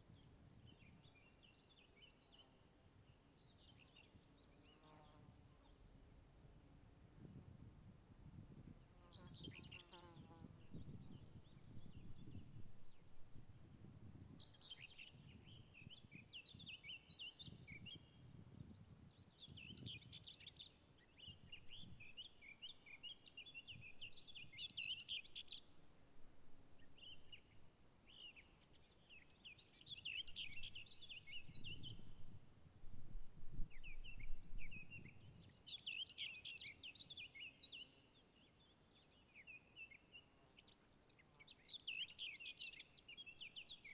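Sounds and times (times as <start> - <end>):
crickets trilling: 0.0 - 43.9
wind buffeting microphone: 7.2 - 9.8, 10.4 - 16.8, 17.4 - 20.2.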